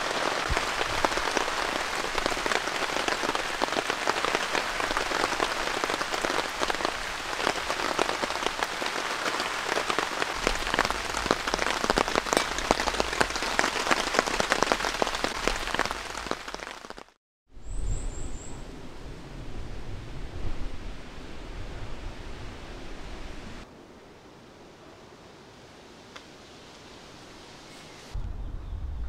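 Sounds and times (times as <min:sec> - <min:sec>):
heavy rain on tent fabric: 0:00.0 - 0:17.2
low wind rumble: 0:17.5 - 0:27.6, 0:28.2 - 0:29.0.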